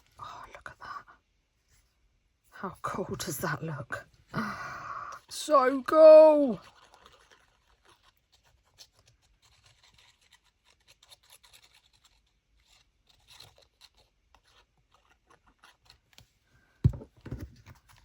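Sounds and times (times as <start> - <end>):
paper and card rustling: 6.0 - 18.0.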